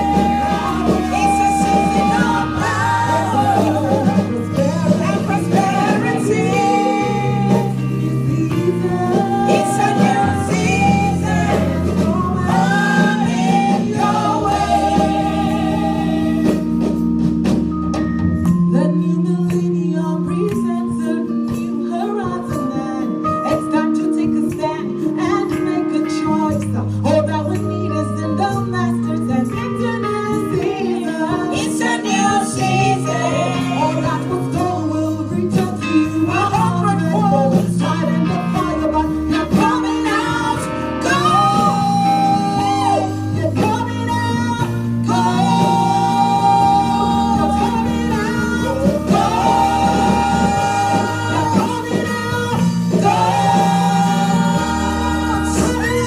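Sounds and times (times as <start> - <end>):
gospel choir singing: 0.0 - 17.6, 30.1 - 56.0
bass line: 0.0 - 21.5, 32.2 - 56.0
band playing: 0.0 - 27.4, 30.1 - 56.0.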